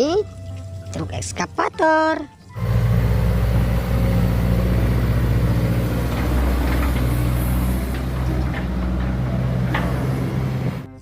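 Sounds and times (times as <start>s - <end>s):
hiss: 2.6s - 8.4s
steady motor hum: 2.6s - 11.0s.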